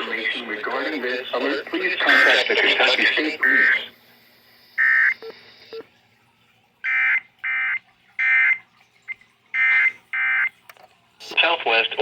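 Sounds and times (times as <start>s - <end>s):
warbling digital data bursts: 4.6s - 5.8s.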